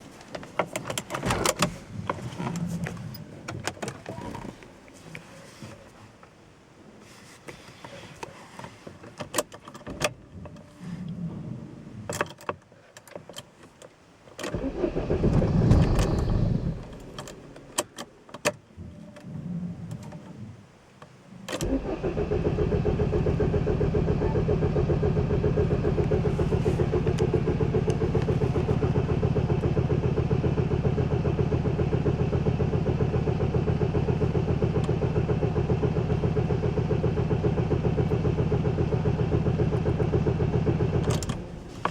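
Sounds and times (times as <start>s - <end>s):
engine cranking: 14.4s - 18.1s, 21.6s - 41.9s
clicks: 14.4s - 18.5s
diesel engine idling: 14.5s - 17.8s, 21.6s - 41.9s.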